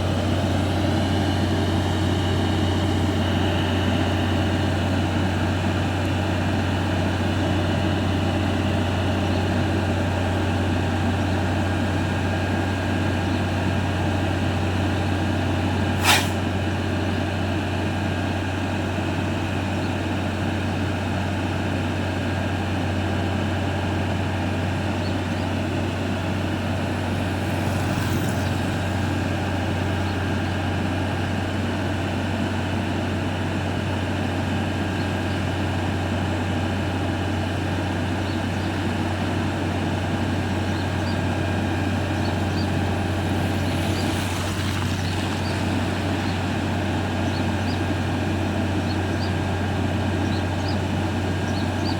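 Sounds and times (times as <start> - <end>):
diesel engine running: 0.0 - 51.9
sharp air hiss: 16.0 - 16.5.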